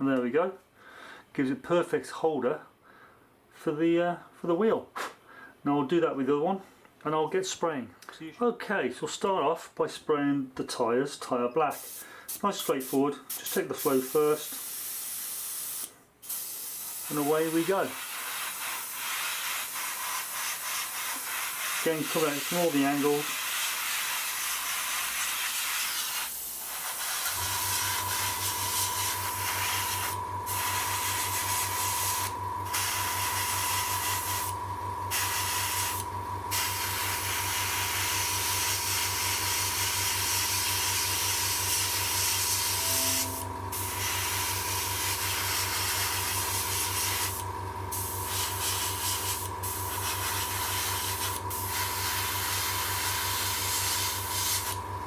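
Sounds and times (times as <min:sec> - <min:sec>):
airbrush spraying hiss: 0:11.8 - 0:22.7, 0:23.3 - 0:34.5, 0:42.4 - 0:44.4, 0:45.1 - 0:54.8
compressor humming: 0:27.2 - 0:55.0.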